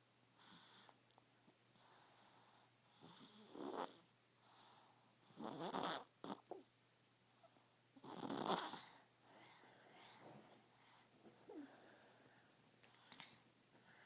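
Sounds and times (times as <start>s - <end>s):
baby snoring: 3.0s - 4.0s, 5.3s - 6.6s, 8.0s - 9.0s.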